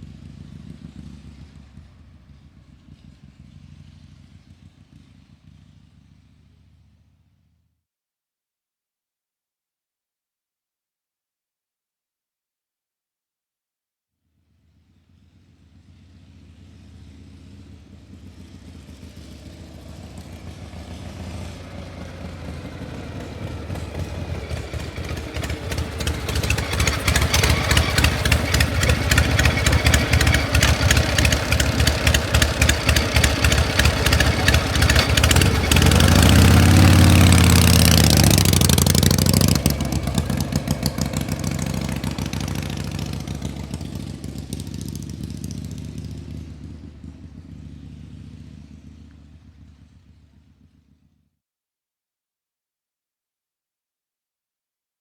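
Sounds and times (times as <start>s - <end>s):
vehicle engine revving: 0.0s - 7.4s, 14.7s - 51.0s.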